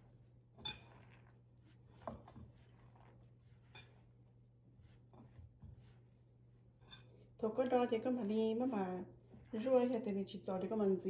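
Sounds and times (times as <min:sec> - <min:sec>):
utensils clinking against a bowl: 0:00.6 - 0:01.3, 0:03.6 - 0:04.1, 0:06.8 - 0:07.3.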